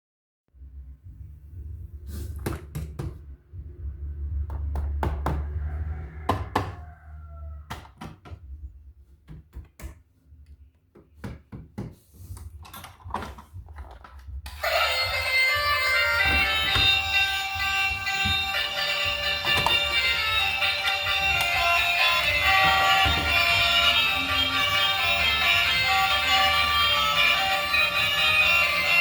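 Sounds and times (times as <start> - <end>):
low handling rumble: 0.6 - 2.1, 3.2 - 6.2
objects clicking and knocking: 12.4 - 14.5.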